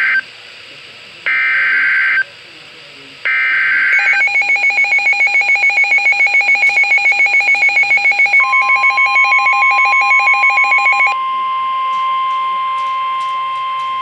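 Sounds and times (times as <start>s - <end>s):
steady alarm tone: 0.0s - 0.3s, 1.3s - 2.3s, 3.2s - 14.0s
warbling electronic alert trill: 3.3s - 14.0s.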